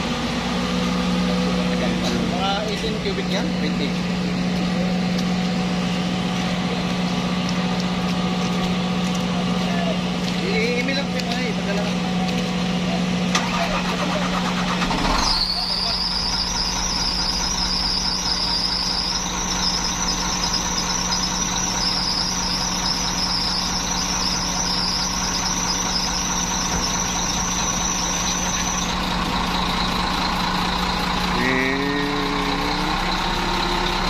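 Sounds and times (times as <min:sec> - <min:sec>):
diesel engine idling: 0:00.0 - 0:34.0
brief rising tone: 0:31.4 - 0:34.0.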